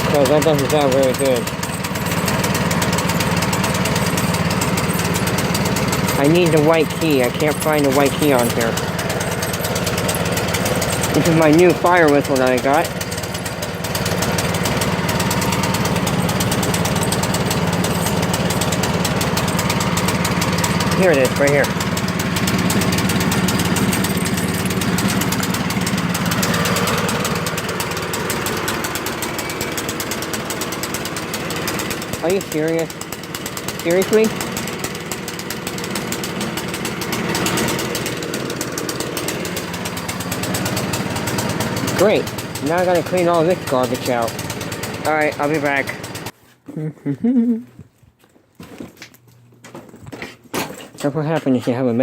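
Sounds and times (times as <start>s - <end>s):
snowblower engine puttering: 0.0s - 46.4s, 48.6s - 52.0s.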